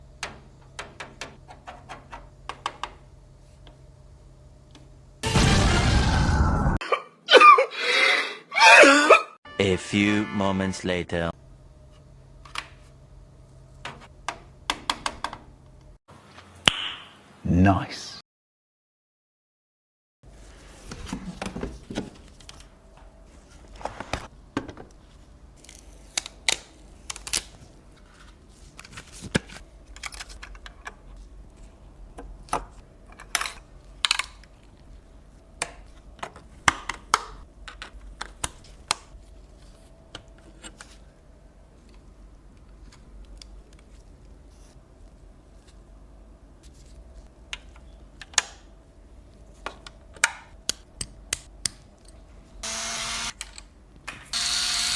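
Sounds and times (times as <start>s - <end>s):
faint steady hum: 11.3s - 16.0s.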